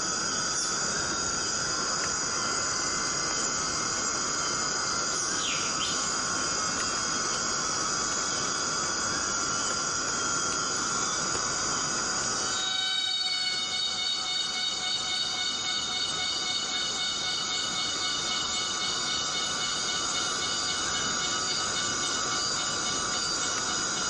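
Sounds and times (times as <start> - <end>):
cicadas droning: 0.0 - 24.0.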